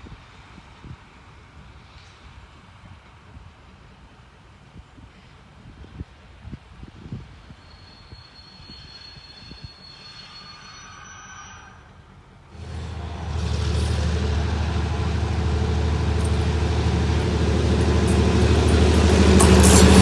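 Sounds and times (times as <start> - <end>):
train high whine: 7.6 - 20.0
train engine drone: 12.5 - 20.0.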